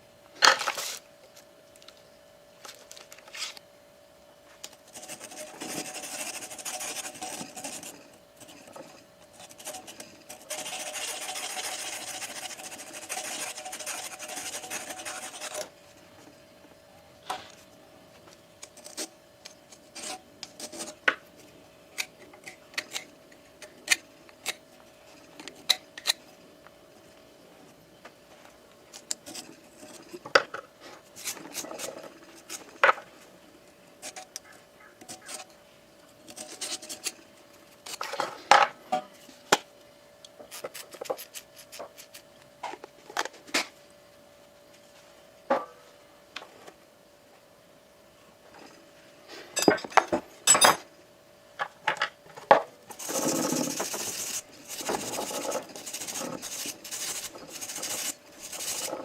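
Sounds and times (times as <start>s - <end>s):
metal scraping and rubbing: 4.9s - 15.7s, 52.9s - 59.0s.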